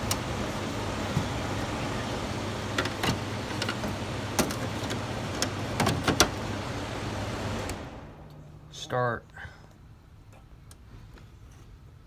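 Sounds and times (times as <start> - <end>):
air conditioner fan running: 0.0 - 9.0.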